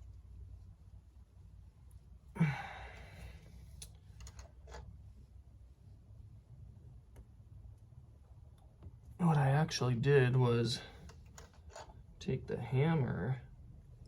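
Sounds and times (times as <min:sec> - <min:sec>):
man sighing heavily: 0:02.4 - 0:03.4.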